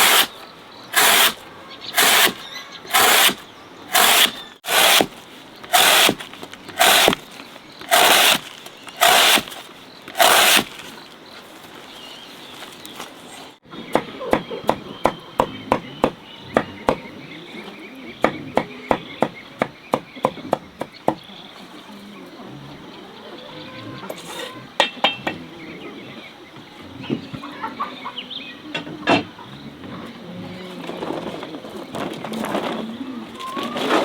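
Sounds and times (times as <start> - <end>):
tool striking sharp knocks: 1.0 - 1.4, 7.8 - 10.8.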